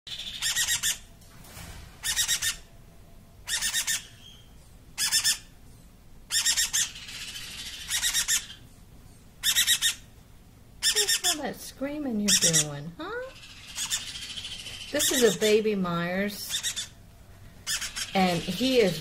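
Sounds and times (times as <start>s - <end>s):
parrot chick screaming: 0.1s - 1.1s, 2.0s - 2.7s, 3.4s - 5.5s, 6.3s - 8.6s, 9.4s - 10.1s, 10.8s - 11.4s, 12.3s - 15.5s, 16.5s - 17.0s, 17.6s - 19.0s.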